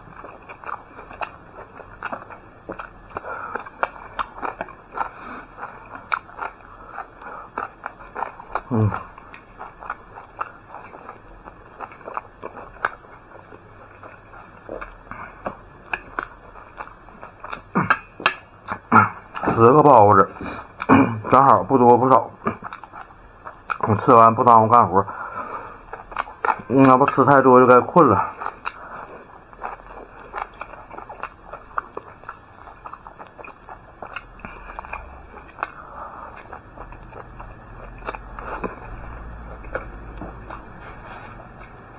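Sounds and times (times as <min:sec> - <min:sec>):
person chewing: 0:00.0 - 0:41.9
wet mouth clicks: 0:14.2 - 0:19.6.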